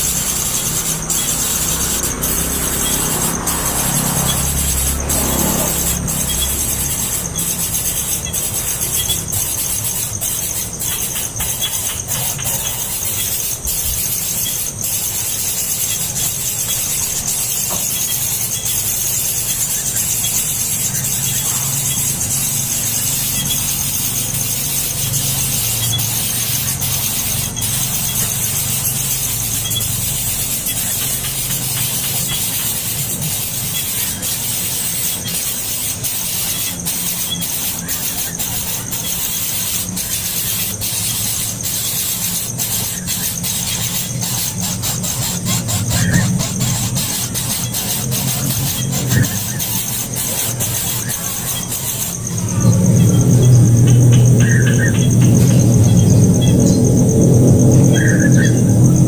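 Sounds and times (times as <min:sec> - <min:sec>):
baby birds cheeping: 0:00.0 - 0:59.0.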